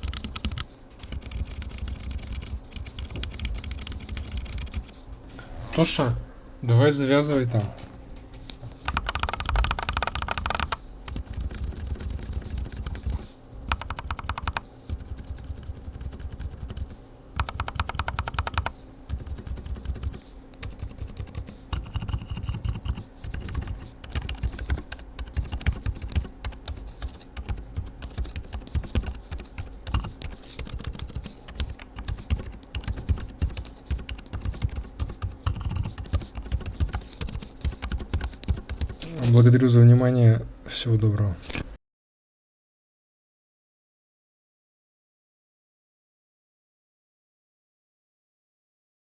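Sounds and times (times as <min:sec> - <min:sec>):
muted keyboard keystrokes: 0:00.0 - 0:04.9, 0:08.8 - 0:39.1.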